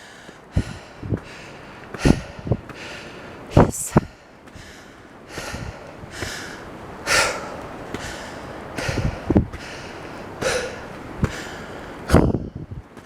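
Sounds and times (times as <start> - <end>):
person breathing hard: 0.0 - 12.8
soft footfalls: 0.2 - 6.5.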